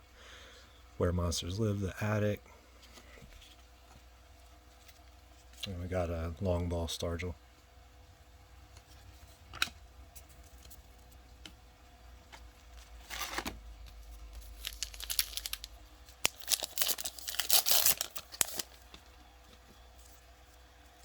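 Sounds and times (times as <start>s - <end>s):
wrapper tearing and crinkling: 14.3s - 19.0s.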